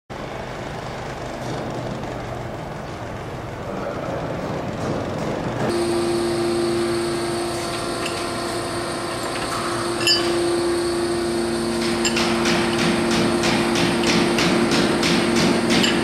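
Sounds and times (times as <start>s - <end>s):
lathe humming and whining: 0.2s - 16.0s
metal clink: 8.0s - 8.4s, 9.3s - 10.7s, 11.8s - 13.0s, 15.4s - 16.0s.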